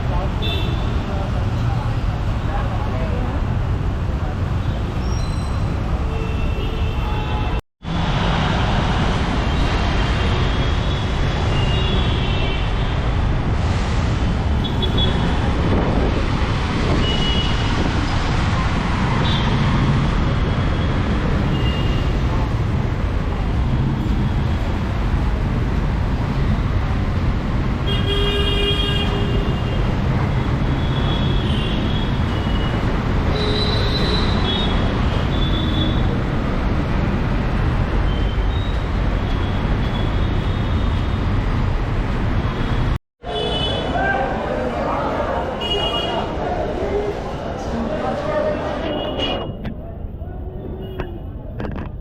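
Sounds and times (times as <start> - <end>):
city traffic: 0.0 - 52.0
vehicle horns tooting: 48.8 - 49.6.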